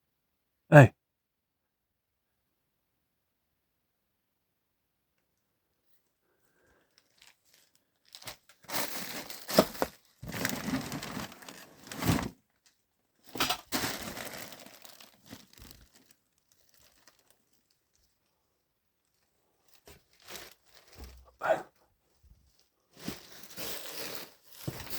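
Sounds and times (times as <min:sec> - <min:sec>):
rustling and crinkling: 0:05.9 - 0:21.4, 0:22.0 - 0:24.9.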